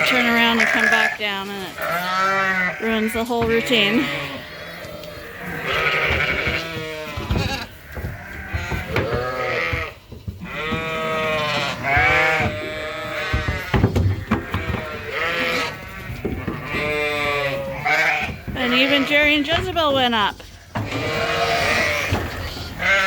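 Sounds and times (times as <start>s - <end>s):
sheep and lambs bleating: 0.0s - 23.0s.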